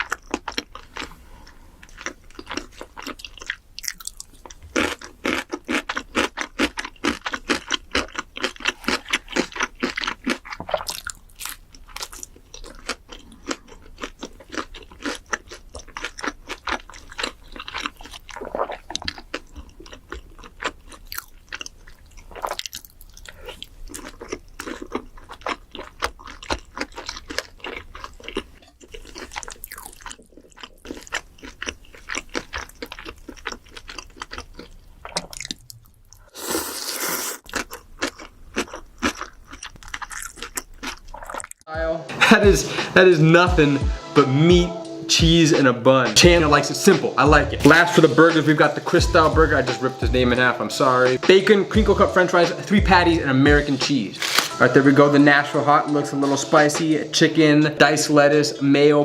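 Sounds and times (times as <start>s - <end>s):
chewing and crunching food: 0.0s - 41.7s, 53.6s - 54.7s.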